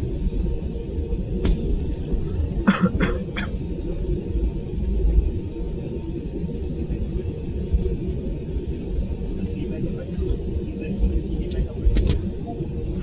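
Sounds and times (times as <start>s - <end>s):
airliner cabin rumble: 0.0s - 13.0s
person coughing: 2.7s - 3.5s.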